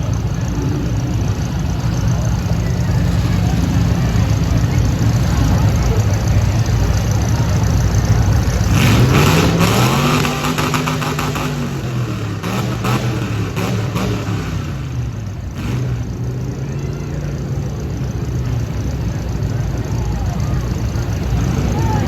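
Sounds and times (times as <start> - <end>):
car engines revving: 0.0 - 22.0
exhaust crackles: 0.0 - 22.0.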